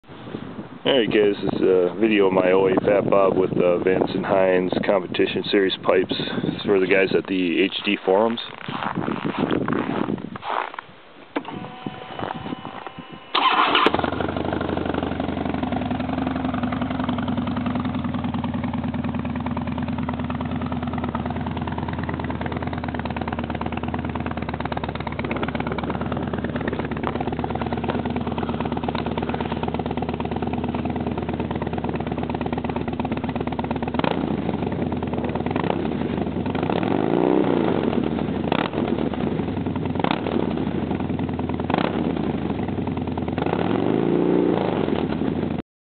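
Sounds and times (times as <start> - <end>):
motorcycle engine cranking: 11.4 - 37.0
motorcycle engine revving: 11.4 - 45.6
motorcycle engine idling: 11.5 - 43.4.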